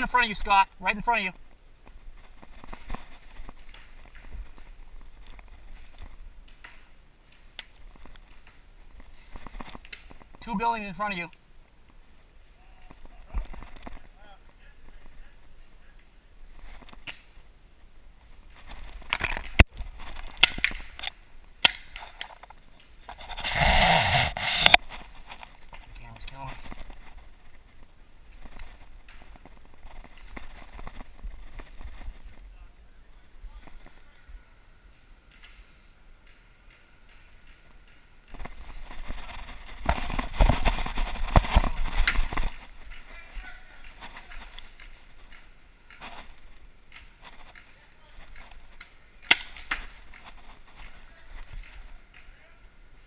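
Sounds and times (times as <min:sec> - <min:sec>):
loud scraping rustle: 0:01.9 - 0:10.5, 0:22.0 - 0:32.5, 0:38.3 - 0:52.0
paintball pistol firing pops: 0:49.2 - 0:49.8.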